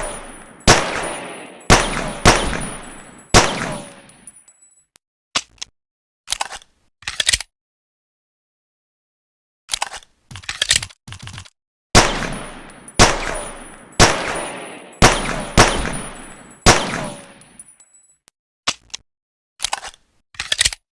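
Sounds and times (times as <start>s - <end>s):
echoing gunshots: 0.0s - 4.2s, 12.0s - 17.5s.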